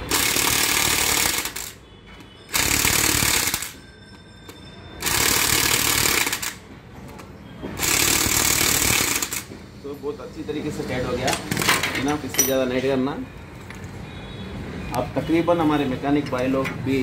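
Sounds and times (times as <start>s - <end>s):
impact wrench hammering: 5.0s - 6.6s.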